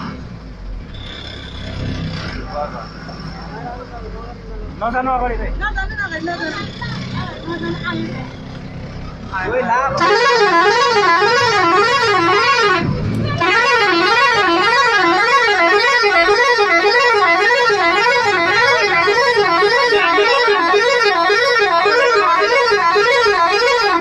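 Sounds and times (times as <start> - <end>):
warbling bus air horn: 10.0 - 24.0.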